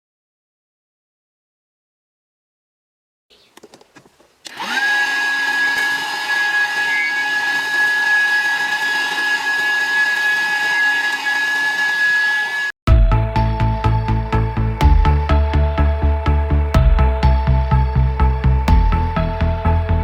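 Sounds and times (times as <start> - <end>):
vacuum motor high whine: 4.5 - 12.8.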